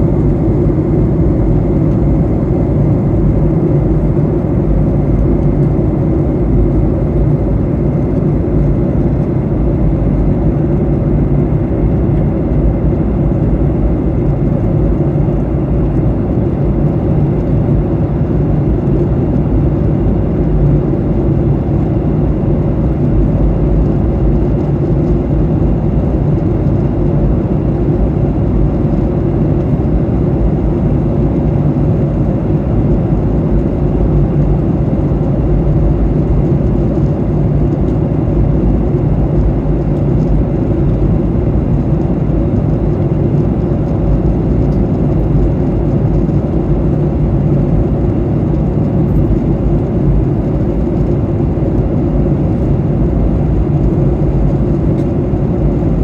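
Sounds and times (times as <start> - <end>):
airplane cabin engine drone: 0.0 - 56.0.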